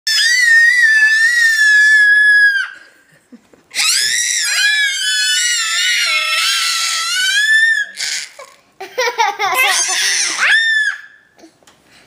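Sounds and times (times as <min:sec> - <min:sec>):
child screaming: 0:03.8 - 0:08.4, 0:09.6 - 0:11.2.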